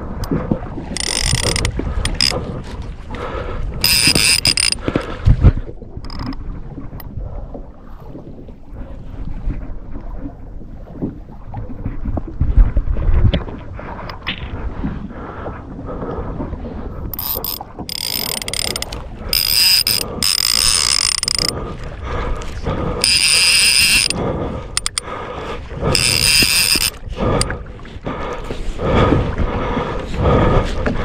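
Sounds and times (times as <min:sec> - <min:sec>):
fishing reel drag buzzing: 0:01.0 - 0:02.4, 0:03.8 - 0:04.8, 0:06.0 - 0:06.4, 0:17.2 - 0:21.6, 0:23.0 - 0:24.2, 0:24.8 - 0:25.0, 0:25.9 - 0:27.0.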